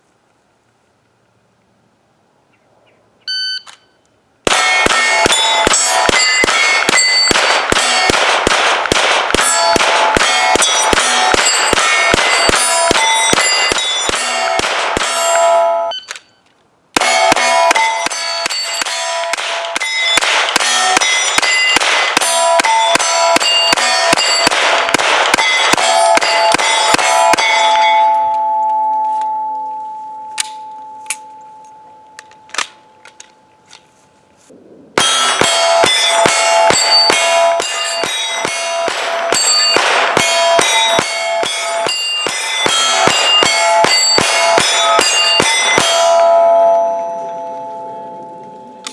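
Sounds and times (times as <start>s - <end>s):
pistol shots: 4.4s - 15.7s, 17.0s - 28.4s, 35.0s - 46.7s
steel targets clanging: 4.5s - 16.4s, 17.0s - 33.5s, 35.0s - 48.9s.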